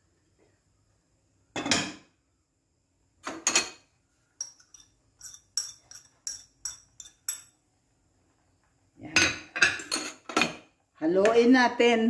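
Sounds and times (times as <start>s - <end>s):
metal utensil clinking on pot: 4.4s - 7.5s.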